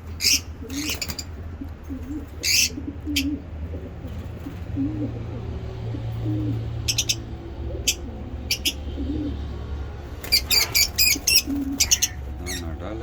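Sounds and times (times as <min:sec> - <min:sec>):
lovebirds chirping: 0:00.0 - 0:03.5, 0:06.2 - 0:09.5, 0:10.2 - 0:12.8
pigeons cooing softly: 0:00.0 - 0:12.8
steady low hum: 0:00.0 - 0:13.0.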